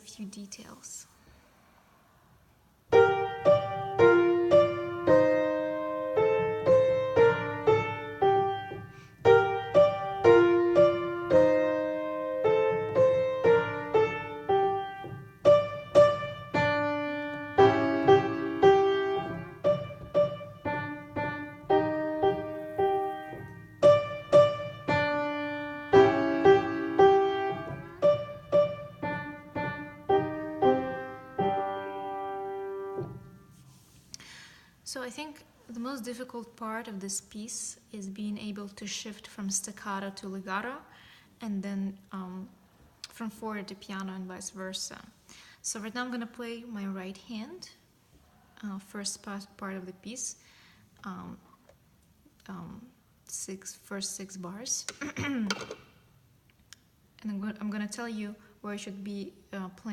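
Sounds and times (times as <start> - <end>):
piano playing children's piece: 2.9 - 33.6.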